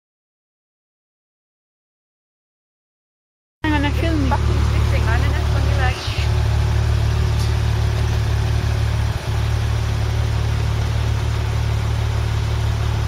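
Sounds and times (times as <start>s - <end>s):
car engine idling: 3.6s - 13.0s.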